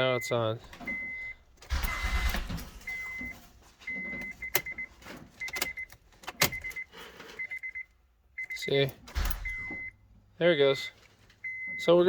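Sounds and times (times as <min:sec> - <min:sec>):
dashboard warning chime beeping: 0:00.0 - 0:12.0.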